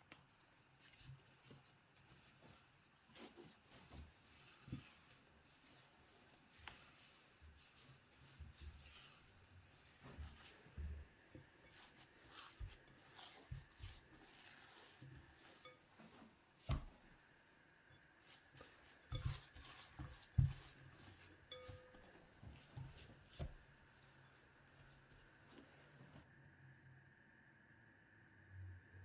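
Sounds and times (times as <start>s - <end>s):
utensils and dishes clinking: 21.4s - 22.2s.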